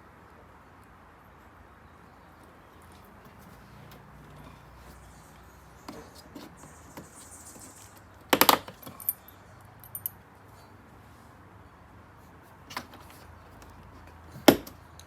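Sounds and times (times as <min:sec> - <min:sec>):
small hard parts clicking: 0:08.3 - 0:10.2.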